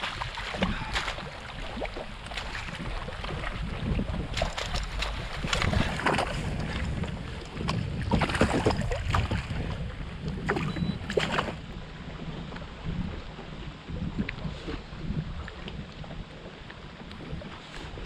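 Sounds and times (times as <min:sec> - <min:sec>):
water splashes: 0:00.0 - 0:18.0
wind rumbling on microphone: 0:00.0 - 0:18.0.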